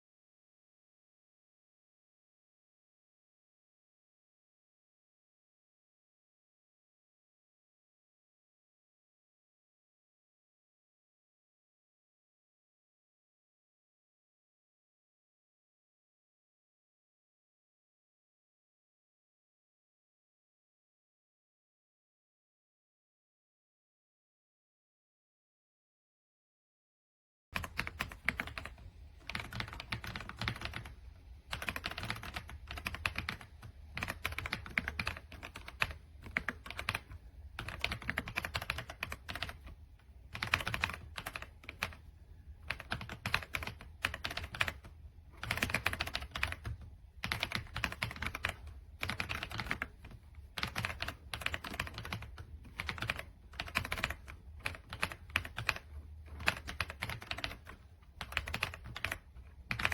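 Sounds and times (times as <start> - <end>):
mechanical keyboard typing: 27.6 - 59.9.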